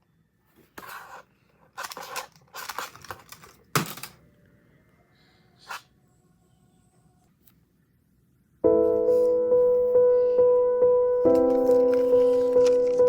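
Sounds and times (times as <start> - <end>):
puzzle cube clicking and rattling: 1.8 - 4.2.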